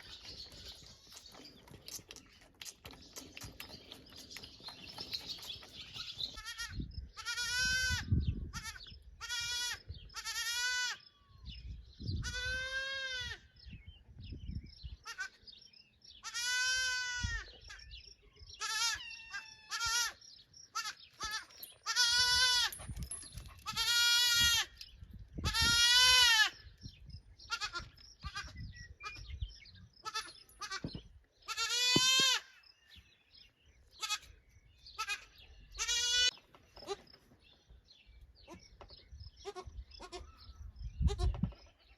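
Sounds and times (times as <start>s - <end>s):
goat kid bleating: 6.4s - 11.0s, 12.2s - 13.5s, 15.0s - 15.4s, 16.2s - 17.5s, 18.6s - 22.7s, 23.6s - 24.8s, 25.4s - 26.6s, 27.5s - 29.2s, 30.0s - 30.9s, 31.5s - 32.5s, 34.0s - 34.3s, 35.0s - 37.0s, 39.4s - 41.4s.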